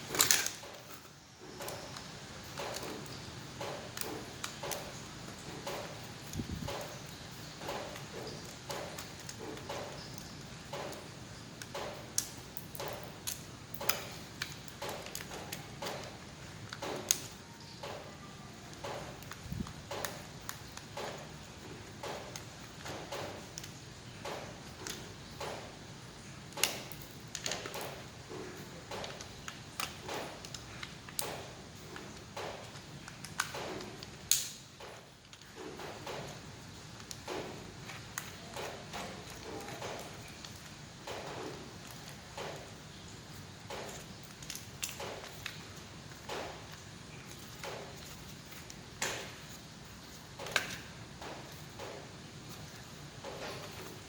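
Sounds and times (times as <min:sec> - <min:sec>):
plastic and metal parts clicking: 0:00.0 - 0:11.0.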